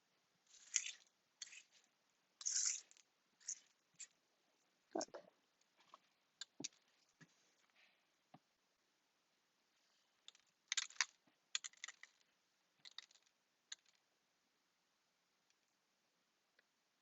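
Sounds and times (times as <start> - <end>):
small pieces clicking on hard surface: 10.3 - 12.2, 12.8 - 14.0.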